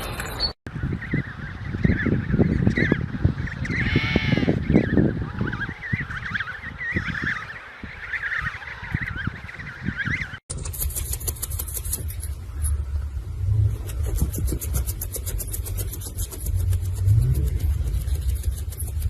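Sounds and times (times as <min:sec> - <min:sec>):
honk-like bird call: 0:03.7 - 0:04.6
rustling: 0:10.5 - 0:19.0.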